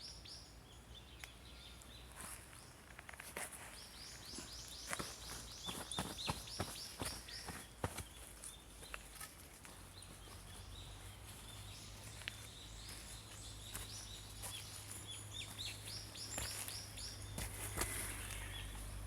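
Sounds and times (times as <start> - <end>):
small songbirds chirping: 0.0 - 19.0.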